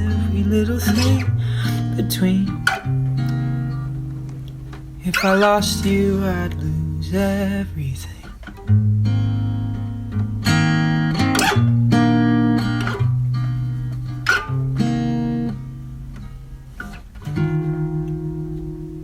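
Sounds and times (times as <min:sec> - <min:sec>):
acoustic guitar strummed chords: 0:00.0 - 0:19.0.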